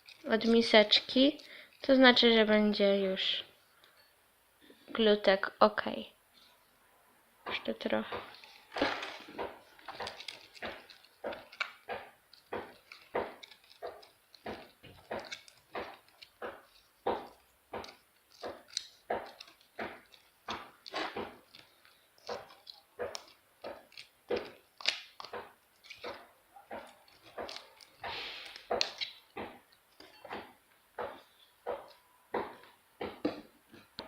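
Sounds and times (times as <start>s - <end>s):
slime being stirred in a bowl: 0.0s - 2.9s, 8.2s - 32.0s.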